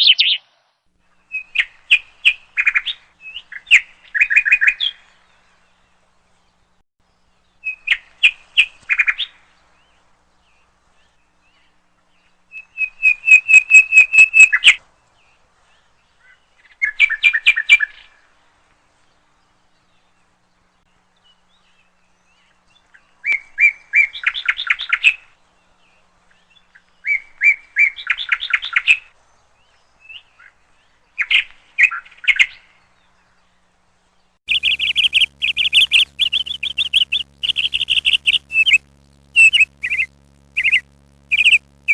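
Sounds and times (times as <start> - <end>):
songbird singing trilled chirps: 34.5 - 41.9.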